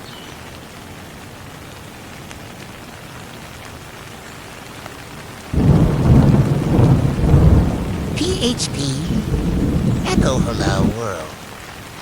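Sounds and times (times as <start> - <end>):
steady rain falling: 0.0 - 12.0
thunder rumbling: 5.6 - 11.5.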